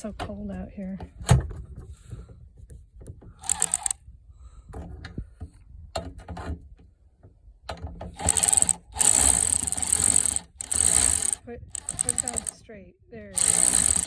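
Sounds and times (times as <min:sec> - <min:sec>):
power ratchet whirring: 0:03.4 - 0:04.0, 0:08.2 - 0:12.6, 0:13.4 - 0:14.0
socket and tool clicks: 0:03.4 - 0:04.0, 0:08.2 - 0:12.6, 0:13.4 - 0:14.0.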